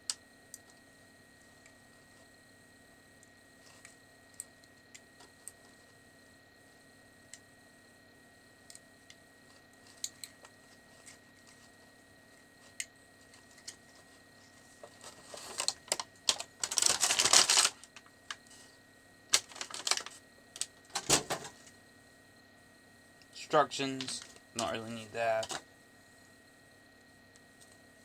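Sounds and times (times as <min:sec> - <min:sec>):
packaging rustling and crinkling: 0:12.6 - 0:18.7, 0:19.3 - 0:21.7, 0:24.0 - 0:25.6
packaging scrapes: 0:15.0 - 0:17.8, 0:19.3 - 0:20.2.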